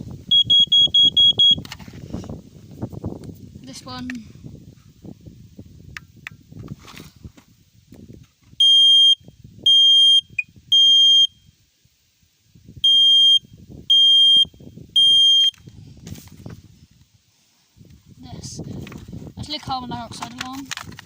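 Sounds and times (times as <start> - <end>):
smoke alarm beeping: 0.3 - 1.6, 8.6 - 11.5, 12.8 - 15.6.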